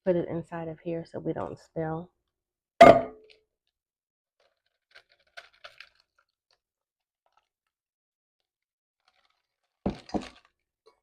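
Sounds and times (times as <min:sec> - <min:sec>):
plastic bag crinkling: 0:04.4 - 0:06.6, 0:07.2 - 0:07.6, 0:09.0 - 0:10.6.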